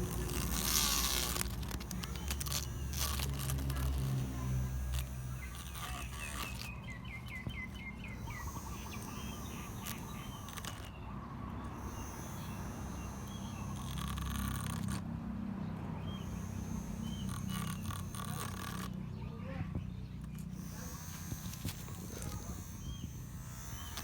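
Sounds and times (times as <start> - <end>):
birds chirping: 0.0 - 24.0
bird trill: 4.3 - 14.6, 16.0 - 18.2, 22.2 - 24.0.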